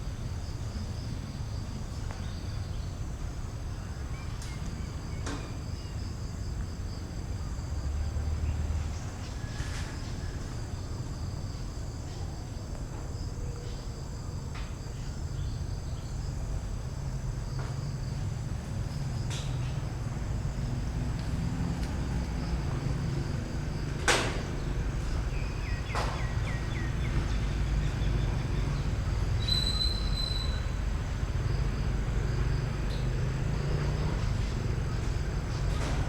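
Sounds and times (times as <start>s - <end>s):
shrill insect chorus: 0.0s - 36.0s.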